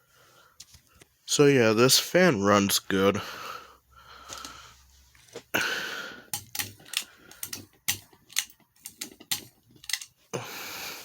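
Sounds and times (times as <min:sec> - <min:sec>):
quick irregular clicks: 0:06.3 - 0:10.1.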